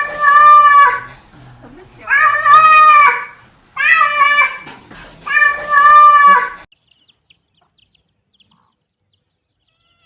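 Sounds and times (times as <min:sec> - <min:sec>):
cat meowing: 0:00.0 - 0:01.1, 0:02.1 - 0:04.6, 0:05.3 - 0:06.7, 0:09.6 - 0:10.0.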